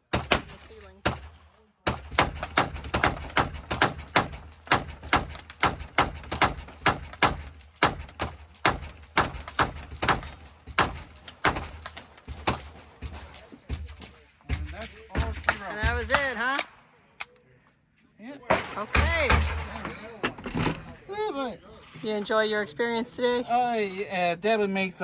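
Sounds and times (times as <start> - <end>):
semi-automatic gunfire: 0.1 - 13.3.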